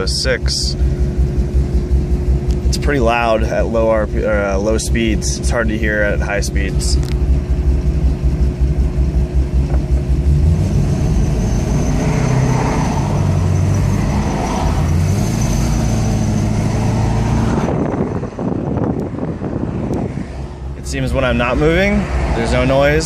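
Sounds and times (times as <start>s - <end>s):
car engine running: 0.0s - 23.0s
road noise: 0.0s - 23.0s
thin high-pitched squeal: 10.8s - 16.7s.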